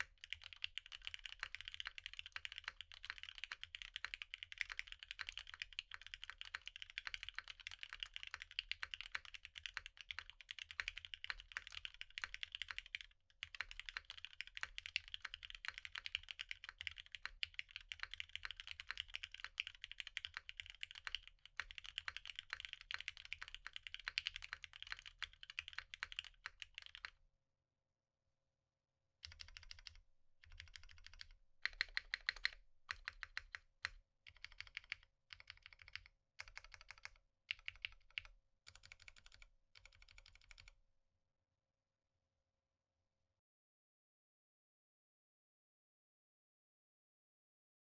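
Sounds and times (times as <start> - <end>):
fast typing on keyboard: 0.0 - 27.1, 29.2 - 40.8.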